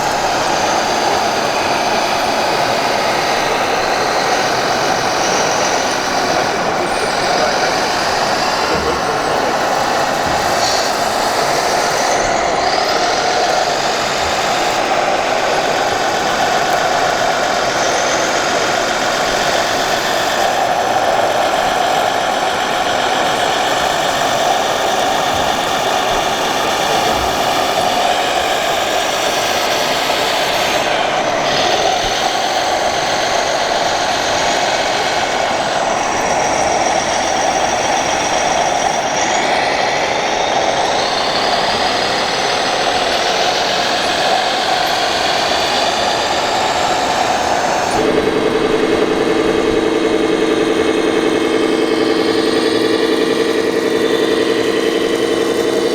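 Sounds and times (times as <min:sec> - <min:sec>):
thin high whines: 0:00.0 - 0:55.9
toy truck engine sound: 0:00.0 - 0:55.9.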